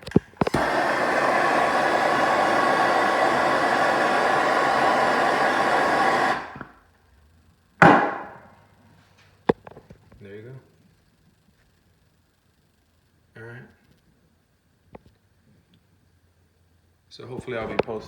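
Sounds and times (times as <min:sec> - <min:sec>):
heat gun blowing: 0:00.0 - 0:06.8
sharp thump: 0:07.8 - 0:08.4.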